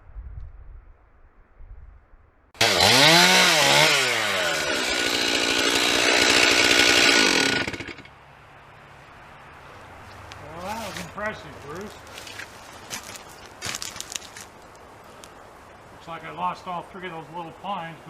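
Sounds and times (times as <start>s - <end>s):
chainsaw revving: 2.6s - 8.1s.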